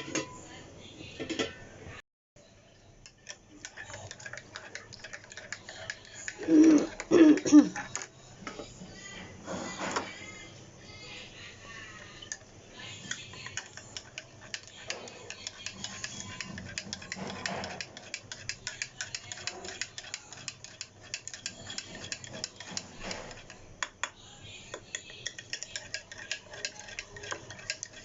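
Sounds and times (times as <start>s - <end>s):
metal spoon clinking against cups: 3.0s - 8.1s, 13.1s - 28.0s.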